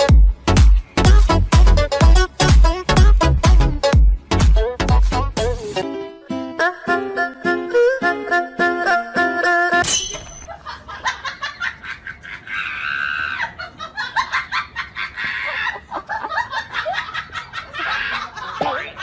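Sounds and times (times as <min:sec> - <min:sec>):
plucked-string music: 0:05.8 - 0:09.8
person laughing hard: 0:10.5 - 0:18.6.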